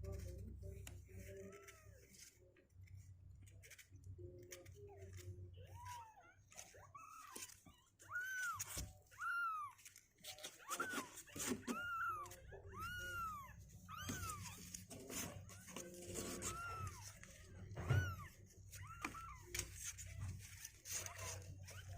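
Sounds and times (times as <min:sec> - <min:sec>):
kittens mewing: 0:04.7 - 0:21.9.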